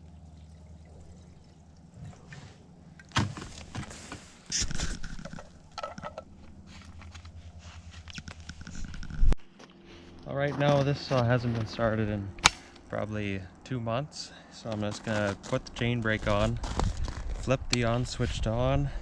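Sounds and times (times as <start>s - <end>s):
low engine-like hum: 0.0s - 4.4s, 5.4s - 16.6s
equipment clunking and rattling: 3.0s - 7.4s.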